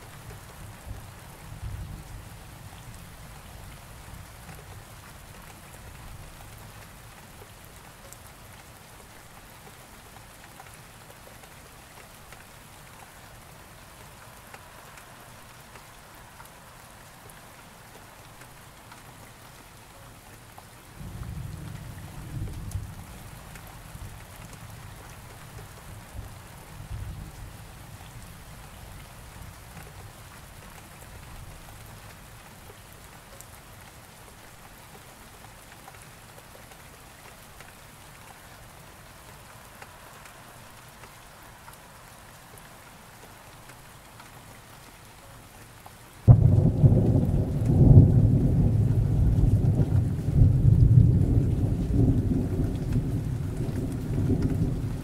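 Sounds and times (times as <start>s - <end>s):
steady rain falling: 0.0s - 55.0s
thunderclap rolling into rumble: 46.3s - 55.0s.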